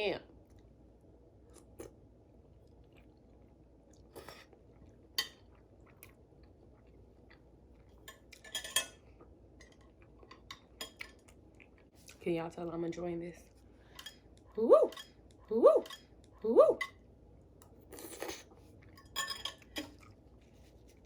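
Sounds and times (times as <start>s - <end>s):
chewing: 2.6s - 8.5s, 9.2s - 12.2s, 17.6s - 21.0s.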